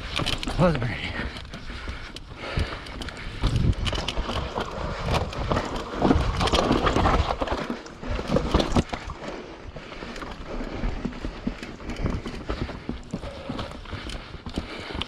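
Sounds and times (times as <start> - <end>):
mountain bike rattling over rocks: 0.0 - 15.0
tyre noise: 0.0 - 15.0.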